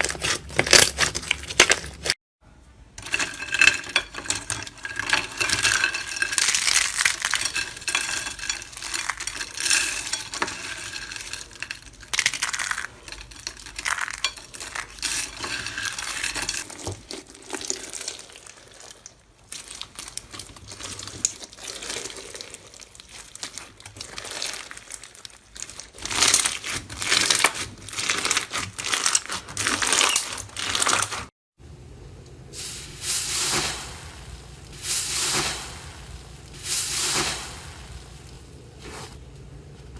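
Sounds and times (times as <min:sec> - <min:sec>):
slime crackling and popping: 0:17.4 - 0:31.3.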